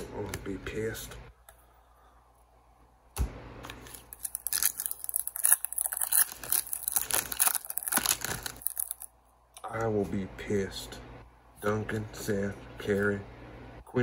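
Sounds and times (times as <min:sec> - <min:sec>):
foil wrapper tearing and crinkling: 0:03.7 - 0:09.1.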